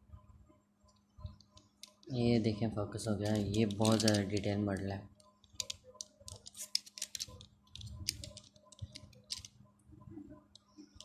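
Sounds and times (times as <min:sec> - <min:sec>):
toy car clicking and tapping: 0:03.2 - 0:04.5, 0:05.4 - 0:09.6
plastic packaging rustling: 0:03.2 - 0:04.6.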